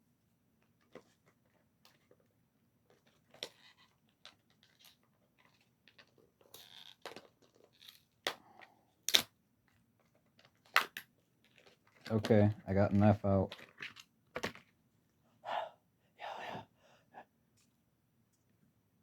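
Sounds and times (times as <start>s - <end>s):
packaging sharp snaps: 9.1s - 9.3s.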